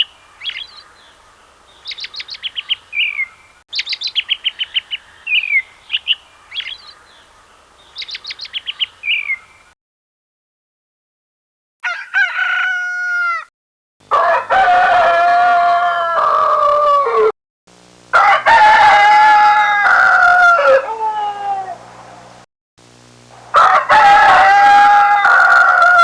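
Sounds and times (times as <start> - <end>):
rooster crowing: 11.8 - 13.5, 14.1 - 17.3, 18.1 - 21.9, 23.4 - 26.0.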